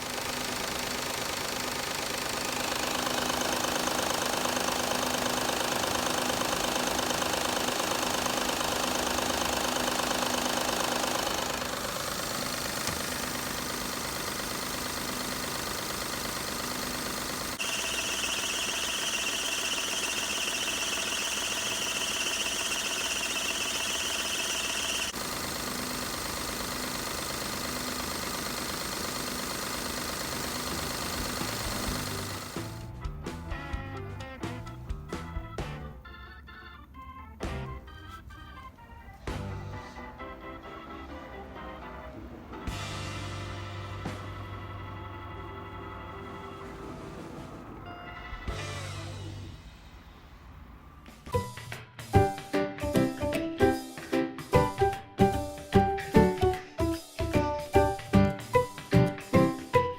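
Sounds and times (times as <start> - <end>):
belt drive whine: 0.0 - 32.9
car engine idling: 0.0 - 32.9.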